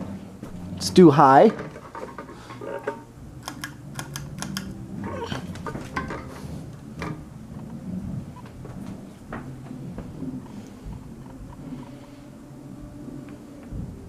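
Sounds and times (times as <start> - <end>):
ceiling fan motor humming: 0.0 - 14.0.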